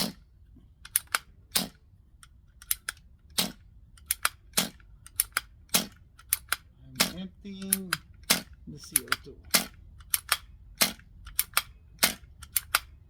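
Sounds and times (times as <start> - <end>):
pistol action clicks: 0.8 - 13.0
bb pistol popping: 2.8 - 12.9.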